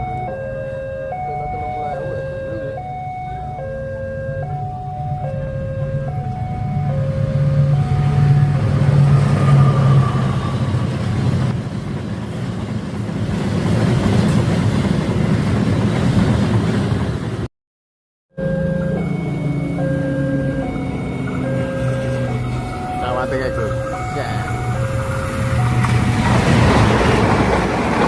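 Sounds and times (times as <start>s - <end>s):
two-note warning signal: 0.0s - 10.4s, 18.4s - 26.7s
passing train rumble: 0.0s - 17.5s, 18.4s - 28.0s.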